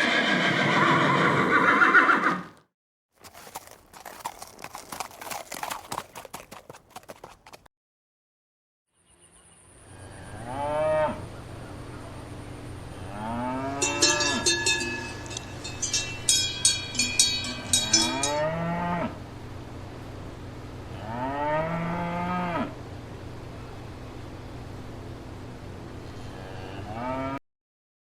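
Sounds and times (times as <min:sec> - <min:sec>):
cattle mooing: 0:13.0 - 0:16.0, 0:26.2 - 0:27.4
bell clanking: 0:13.8 - 0:18.5.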